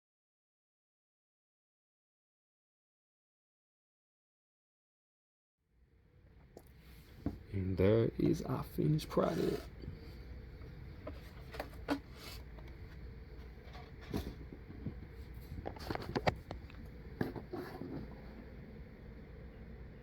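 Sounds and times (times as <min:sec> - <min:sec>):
low steady hum: 0:05.8 - 0:20.0.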